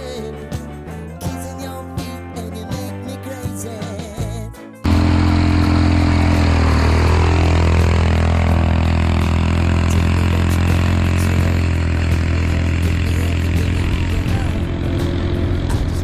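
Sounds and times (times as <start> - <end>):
motor engine running: 4.9 - 16.0.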